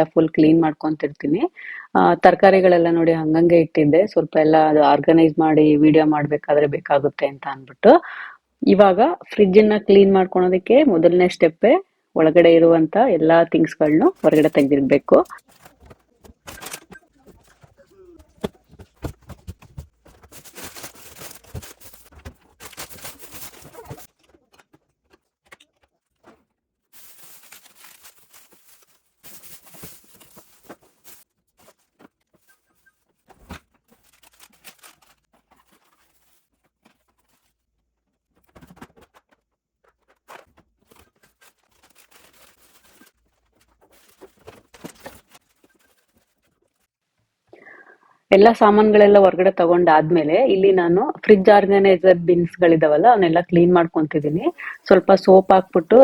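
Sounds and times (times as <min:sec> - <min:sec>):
plastic bags rustling: 0:13.8 - 0:37.6, 0:40.1 - 0:46.9.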